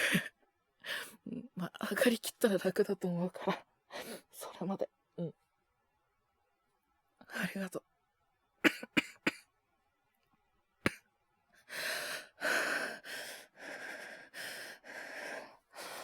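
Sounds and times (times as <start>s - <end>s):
man coughing: 8.7s - 9.4s
man breathing heavily: 11.7s - 16.0s.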